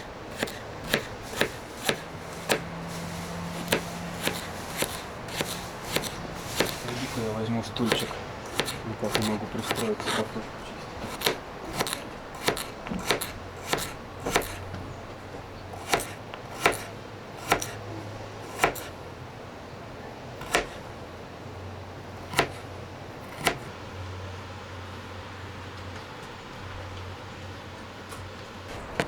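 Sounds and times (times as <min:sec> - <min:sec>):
knife chopping on cutting board: 0:00.0 - 0:14.6, 0:15.8 - 0:17.8, 0:18.5 - 0:18.9, 0:20.4 - 0:20.8, 0:22.3 - 0:22.6, 0:23.3 - 0:23.7.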